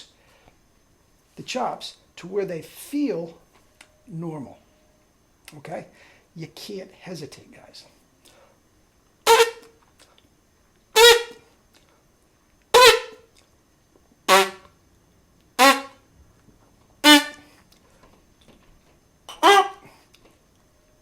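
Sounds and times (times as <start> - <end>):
trumpet playing short notes: 9.2 - 9.7, 11.0 - 11.4, 12.7 - 13.2, 14.3 - 14.7, 15.6 - 16.0, 17.0 - 17.5, 19.3 - 19.8.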